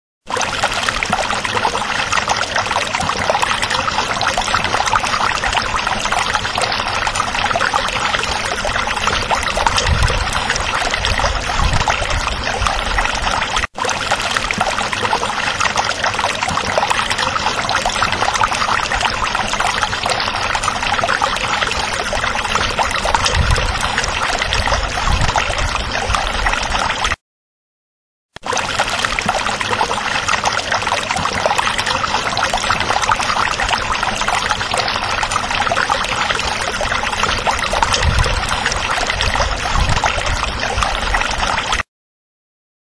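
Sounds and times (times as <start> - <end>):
running water splashing: 0.3 - 27.2, 28.4 - 41.9.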